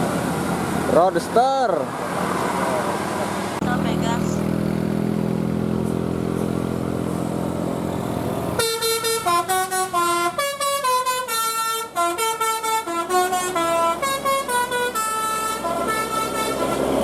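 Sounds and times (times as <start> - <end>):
bus engine running: 0.0 - 17.0
musical air horn tune: 8.6 - 17.0.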